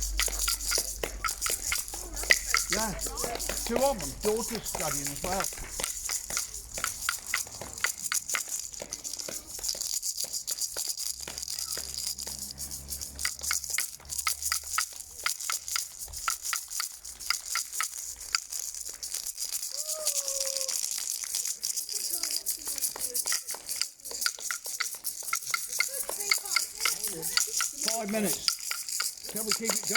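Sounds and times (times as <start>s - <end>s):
crowd clapping: 0.0s - 6.9s.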